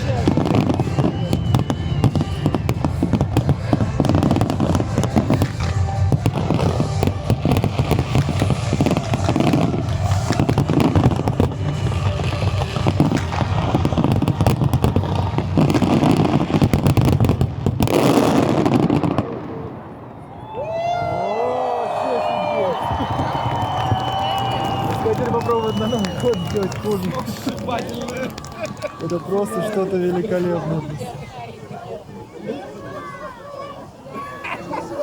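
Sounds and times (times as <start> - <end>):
music playing: 0.0 - 16.0
fireworks bangs and crackling: 0.0 - 20.9, 21.6 - 32.0.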